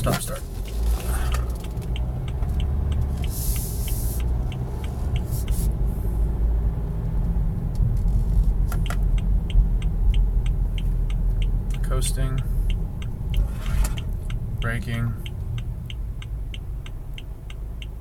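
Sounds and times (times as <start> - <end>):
car engine idling: 0.0 - 18.0
light ticking: 0.0 - 18.0
short hiss: 3.3 - 4.2.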